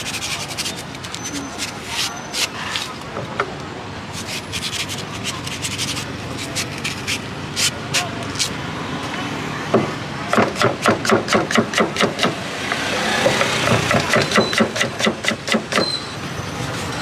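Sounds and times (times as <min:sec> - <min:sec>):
street noise hum: 0:00.0 - 0:17.0
rapid metallic chopping strikes: 0:09.8 - 0:12.5, 0:13.2 - 0:15.9.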